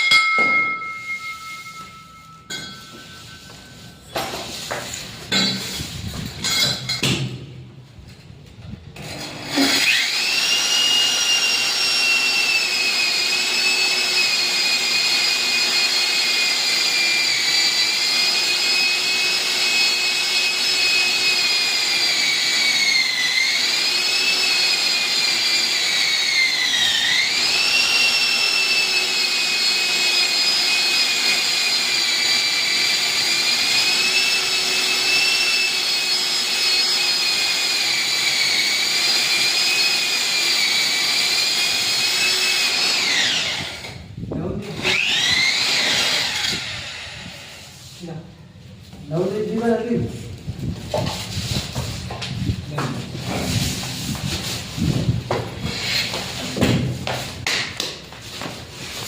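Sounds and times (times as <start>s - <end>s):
core drill whining: 9.0s - 48.0s, 50.6s - 57.8s.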